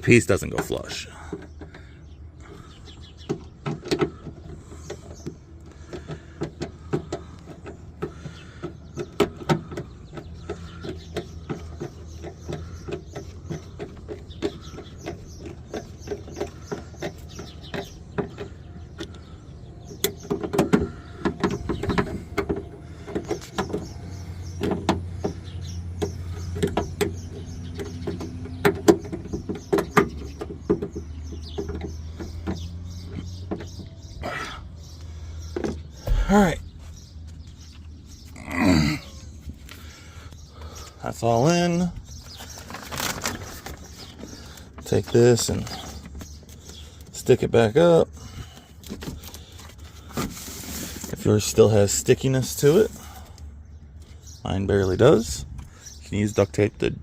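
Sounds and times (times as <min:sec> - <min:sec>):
hand tools clicking and knocking: 0:03.2 - 0:34.6.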